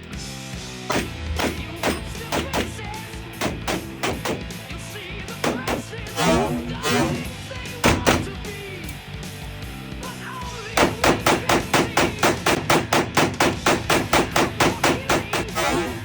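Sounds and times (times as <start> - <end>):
background music: 0.0 - 16.0
fast run of sharp hits: 5.4 - 8.6.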